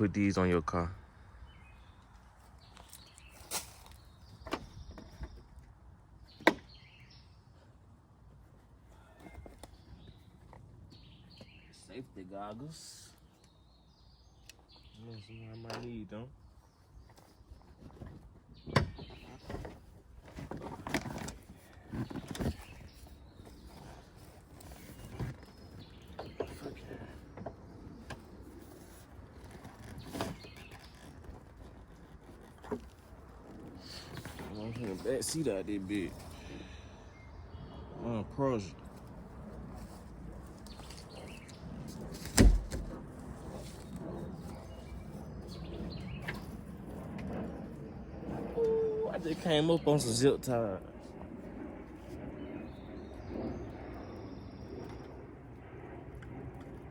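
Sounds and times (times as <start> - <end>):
heavy thump: 42.2 - 43.0.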